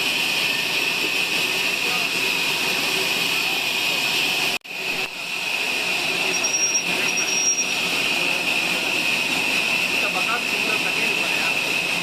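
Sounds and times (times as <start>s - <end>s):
sawmill saw whining: 0.0s - 12.0s
thin high squeal: 6.3s - 7.9s.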